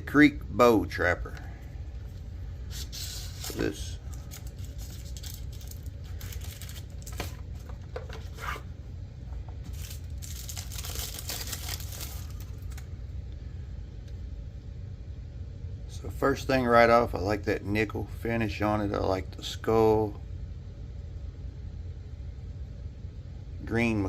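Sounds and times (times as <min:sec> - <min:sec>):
rustling: 0:02.0 - 0:08.7.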